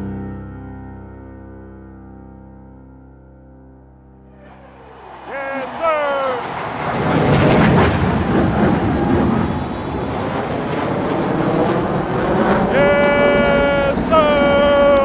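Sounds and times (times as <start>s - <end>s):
stadium crowd din: 4.4s - 10.4s, 12.7s - 15.0s.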